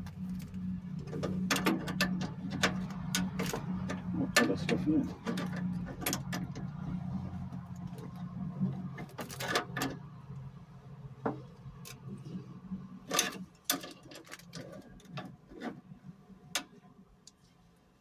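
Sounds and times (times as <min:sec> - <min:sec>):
low steady hum: 0:00.0 - 0:13.8.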